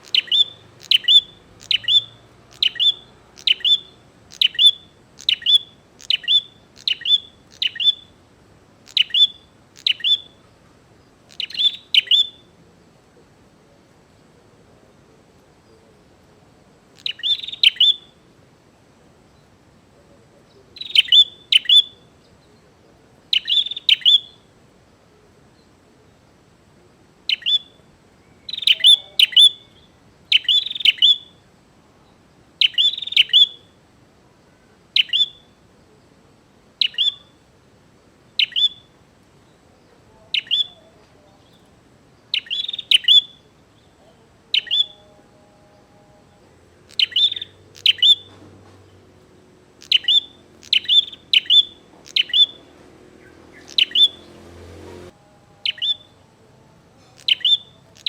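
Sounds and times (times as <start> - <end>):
bird high sharp chirps: 0.0 - 8.2, 8.8 - 10.5, 11.2 - 12.6, 17.0 - 18.2, 20.8 - 22.1, 23.3 - 24.5, 27.3 - 31.4, 32.6 - 33.8, 34.9 - 35.6, 36.8 - 37.4, 38.3 - 39.0, 40.4 - 40.8, 42.3 - 43.4, 44.5 - 45.1, 46.8 - 49.1, 49.7 - 56.2, 57.1 - 58.0.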